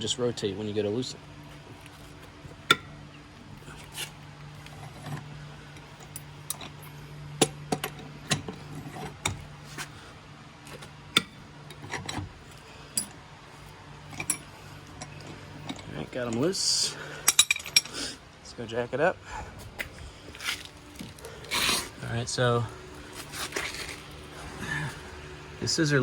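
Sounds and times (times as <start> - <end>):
lug wrench clicking on nuts: 17.2 - 18.0.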